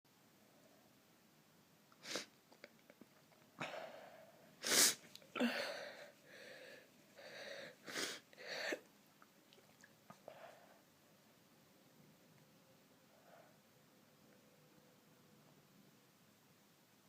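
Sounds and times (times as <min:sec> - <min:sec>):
intakes of breath: 0:03.6 - 0:08.8
person sneezing: 0:04.6 - 0:06.0.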